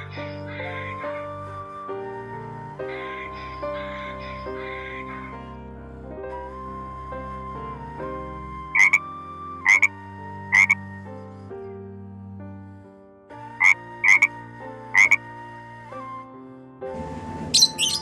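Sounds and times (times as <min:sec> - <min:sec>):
soft background music: 0:00.0 - 0:18.0
loud animal calls: 0:08.8 - 0:09.0, 0:15.0 - 0:15.2, 0:17.6 - 0:18.0.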